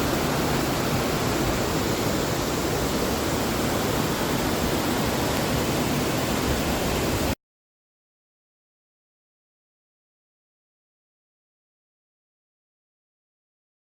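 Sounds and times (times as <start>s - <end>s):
waterfall rushing: 0.0s - 7.4s.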